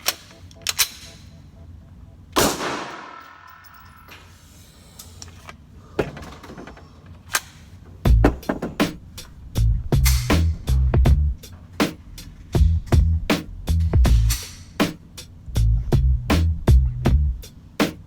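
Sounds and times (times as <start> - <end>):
gunshots: 2.4 - 3.5.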